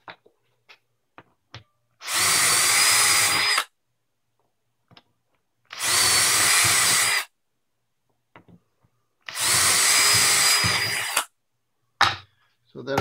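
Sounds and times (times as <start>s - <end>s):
power drill boring into plywood: 2.0s - 3.7s, 5.7s - 7.3s, 9.3s - 11.3s.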